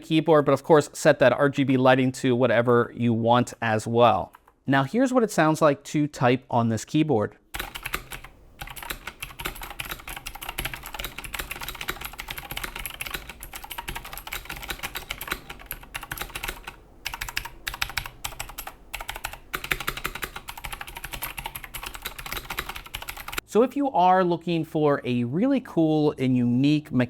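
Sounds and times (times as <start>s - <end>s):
fast typing on mechanical keyboard: 7.6s - 23.4s.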